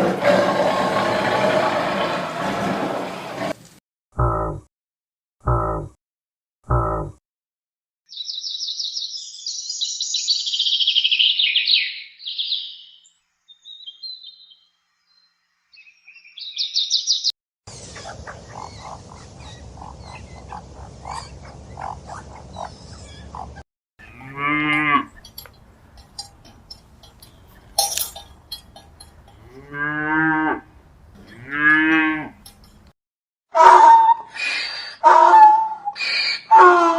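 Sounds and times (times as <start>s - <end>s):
cattle mooing: 24.0s - 25.3s, 29.3s - 32.6s.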